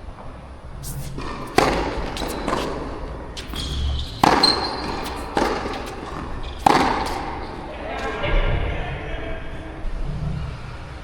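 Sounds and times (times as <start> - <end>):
tennis racket striking ball: 0.8 - 8.3
tennis ball bouncing on court: 0.9 - 8.4.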